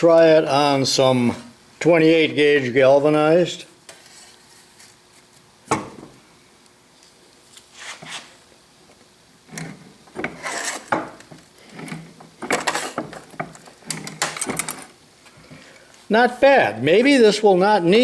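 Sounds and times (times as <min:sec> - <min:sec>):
shear rasping through sheet metal: 0:10.2 - 0:11.0.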